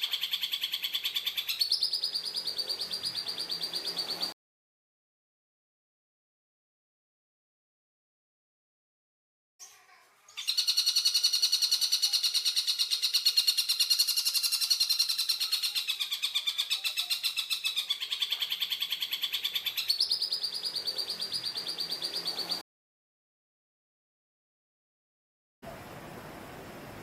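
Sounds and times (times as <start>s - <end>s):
bird rattling trill: 10.4s - 15.7s.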